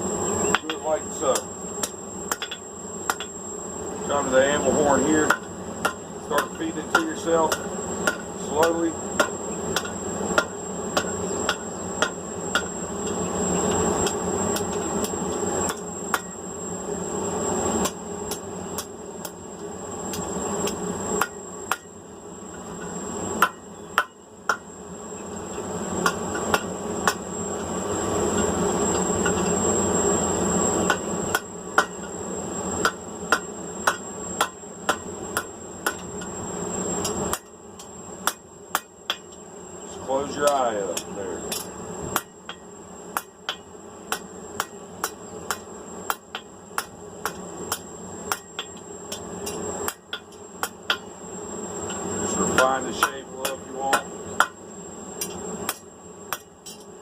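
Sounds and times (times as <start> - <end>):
steady high whine: 0.0 - 57.0
hammer blows on metal anvil: 0.5 - 3.3, 4.9 - 12.8, 52.5 - 54.6.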